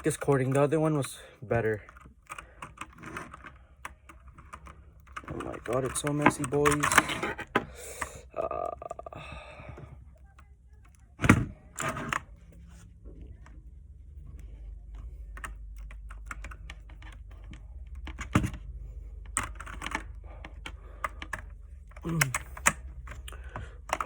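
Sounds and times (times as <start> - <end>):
mechanical keyboard clicks: 1.9 - 7.3, 19.2 - 24.0.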